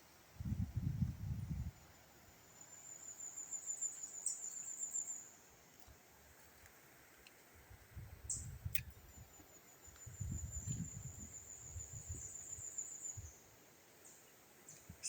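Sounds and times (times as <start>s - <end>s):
insect pulsing trill: 8.2s - 13.4s.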